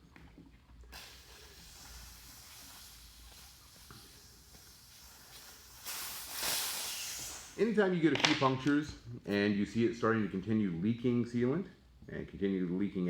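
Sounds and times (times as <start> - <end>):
air hissing out of tire valve: 0.9 - 7.8.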